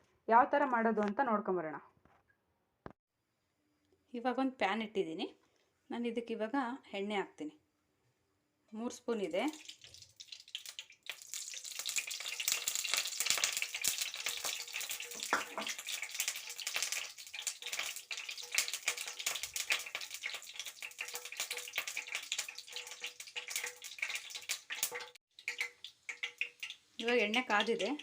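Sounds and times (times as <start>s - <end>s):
oil sizzling in a pan: 9.2s - 28.0s.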